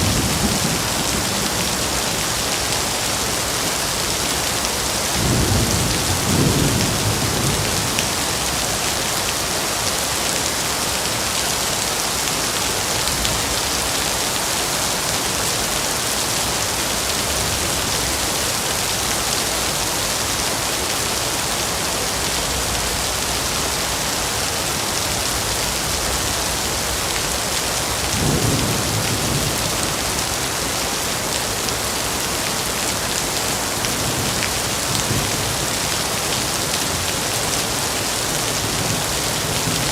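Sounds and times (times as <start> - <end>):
rain falling on forest: 0.0 - 39.9.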